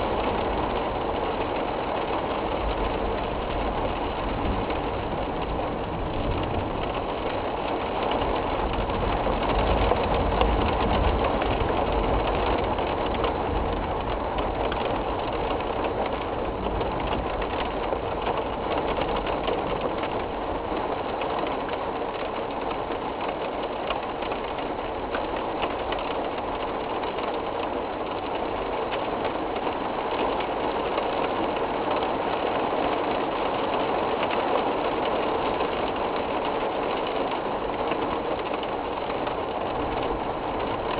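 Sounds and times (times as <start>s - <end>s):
wind gusts buffeting microphone: 0.0s - 23.0s
heavy rain: 0.0s - 40.9s
strong wind: 0.0s - 40.9s.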